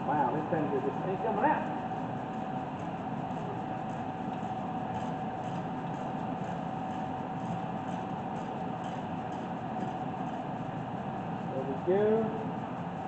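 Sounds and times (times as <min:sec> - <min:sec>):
mechanical hum: 0:00.0 - 0:13.0
mid-pitched whine: 0:00.0 - 0:13.0.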